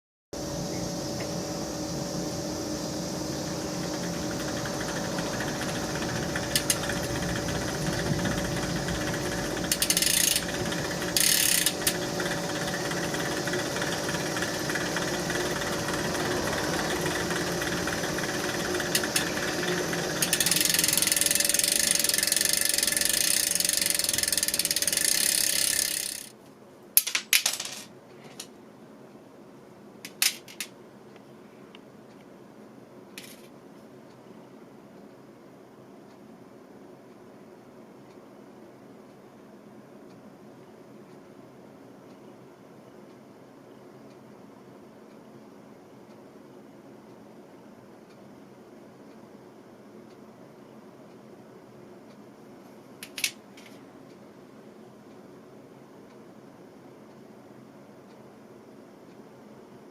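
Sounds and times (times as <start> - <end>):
bike chain whirring and rattling: 1.4 - 26.4
sharp clicks: 3.8 - 26.3.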